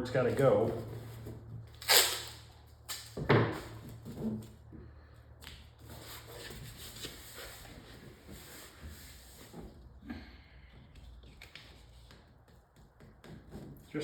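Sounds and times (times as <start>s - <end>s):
tape rustling and knocking: 0.6s - 4.8s, 10.6s - 14.0s.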